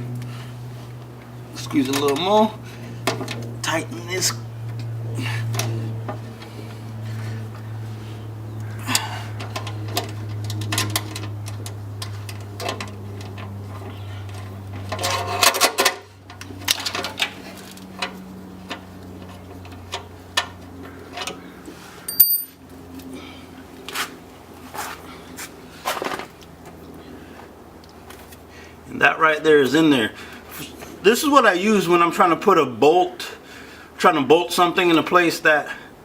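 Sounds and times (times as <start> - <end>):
steady low hum: 0.0 - 15.0
sharp metal ring: 22.1 - 22.6.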